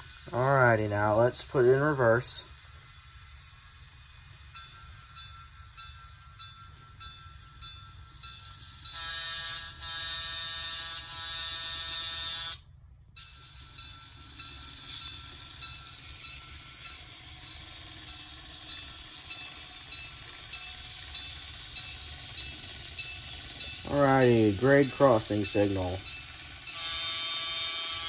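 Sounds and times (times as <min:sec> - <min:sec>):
light repeated bell ringing: 0:04.4 - 0:09.2, 0:13.2 - 0:28.0
diesel engine sound: 0:14.3 - 0:28.0.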